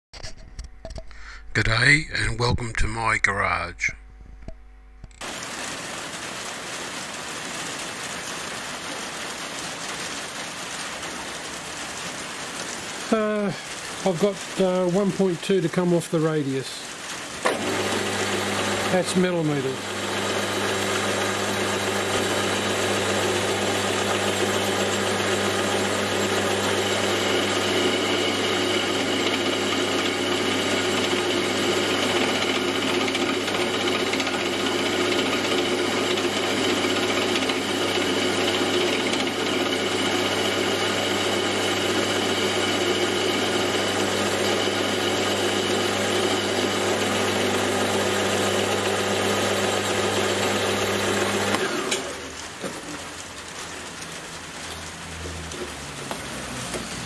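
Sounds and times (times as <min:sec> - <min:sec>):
metal lathe humming: 0:17.5 - 0:52.3.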